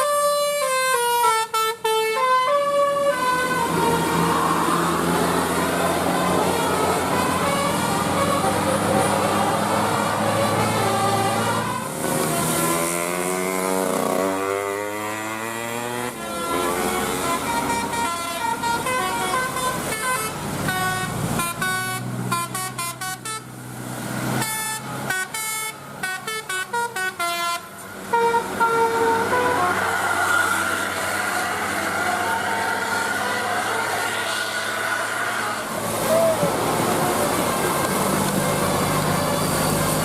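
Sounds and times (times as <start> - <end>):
bus musical horn playing a tune: 0.0 - 14.2, 15.8 - 23.6, 24.3 - 30.6, 31.2 - 35.9.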